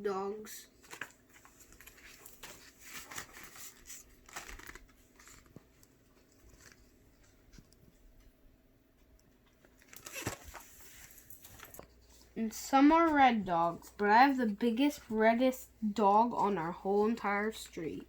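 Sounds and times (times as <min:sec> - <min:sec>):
paper pages rustling: 0:00.8 - 0:07.7, 0:09.6 - 0:12.4.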